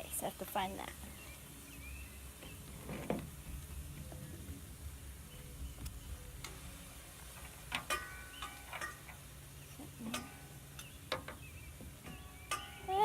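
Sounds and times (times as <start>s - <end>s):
ringing clinks: 12.0s - 13.0s.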